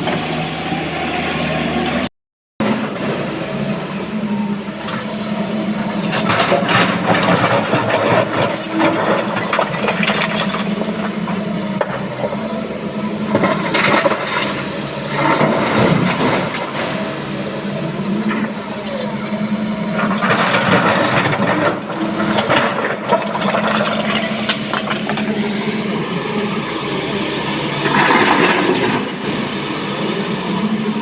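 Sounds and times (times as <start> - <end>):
excavator diesel engine running: 0.0 - 31.0.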